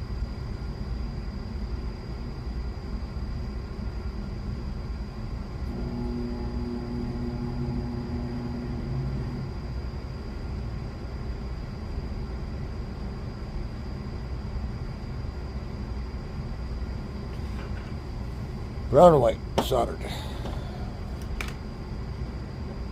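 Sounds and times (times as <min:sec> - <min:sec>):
low hum: 0:04.9 - 0:13.0, 0:15.8 - 0:22.9
fan whooshing: 0:05.4 - 0:11.5, 0:16.4 - 0:22.9.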